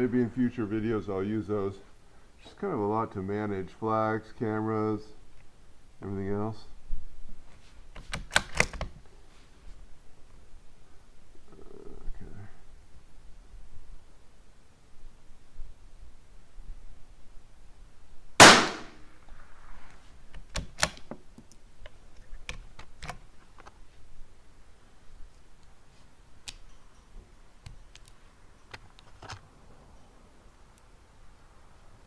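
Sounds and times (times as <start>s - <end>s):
rifle bolt clicks: 8.0s - 8.9s, 18.4s - 19.0s, 20.4s - 21.1s
rifle shot: 18.4s - 19.1s.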